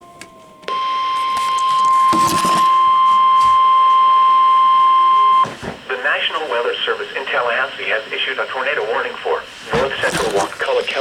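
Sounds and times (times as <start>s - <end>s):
steady single-pitch alarm tone: 0.0s - 8.1s
crackle of noise: 8.6s - 11.0s.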